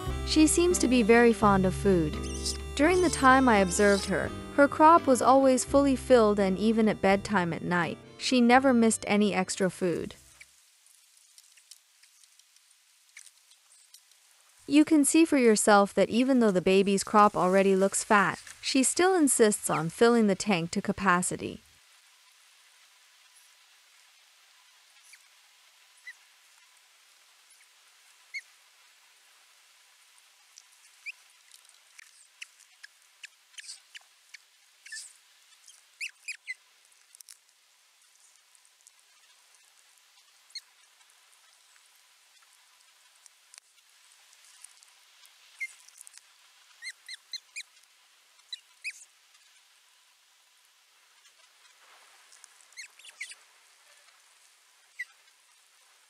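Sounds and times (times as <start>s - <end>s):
faint steady hiss: 0.0s - 56.0s
osprey chirps: 0.6s - 4.4s, 52.8s - 53.4s.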